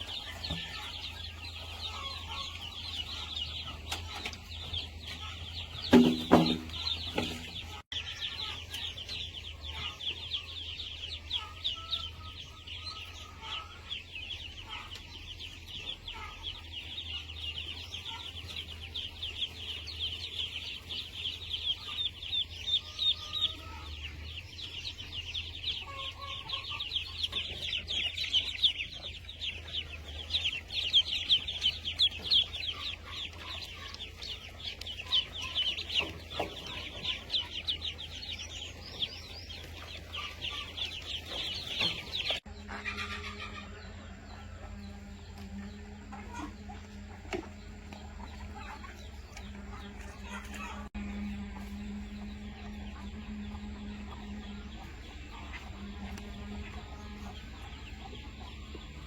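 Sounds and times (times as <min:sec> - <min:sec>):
chickens clucking: 0:00.0 - 0:59.0
chicks cheeping: 0:00.0 - 0:59.0
steady low hum: 0:50.8 - 0:59.0.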